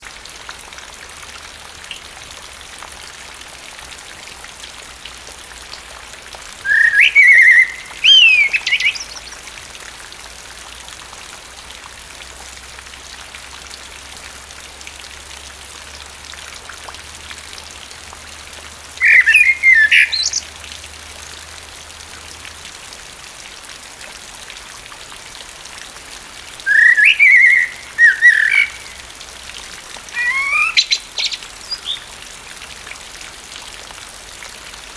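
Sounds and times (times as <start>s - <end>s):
rain falling: 0.0s - 34.9s
blackbird singing: 6.7s - 9.5s, 19.0s - 20.5s, 26.7s - 29.1s, 30.1s - 32.2s.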